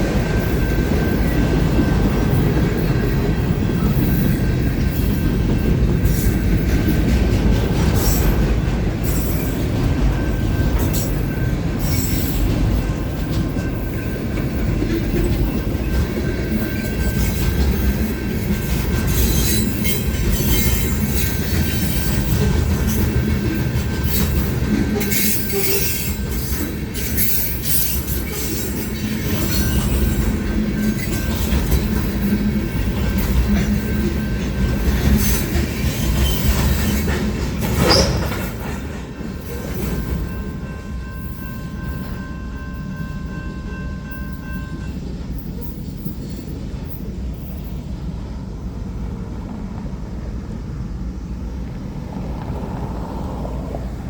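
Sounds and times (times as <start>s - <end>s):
freight train rolling past: 0.0s - 54.0s
wheel squeal: 7.9s - 42.3s.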